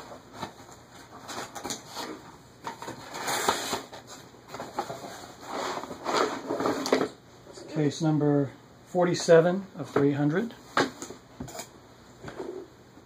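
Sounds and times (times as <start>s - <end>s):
cardboard rustling and tearing: 0.3s - 7.1s.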